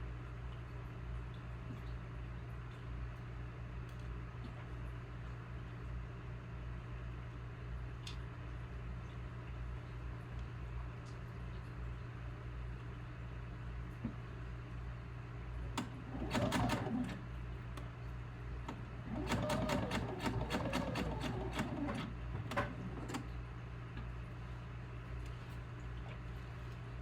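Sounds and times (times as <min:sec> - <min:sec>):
sewing machine running: 0:15.8 - 0:17.2, 0:19.0 - 0:23.2.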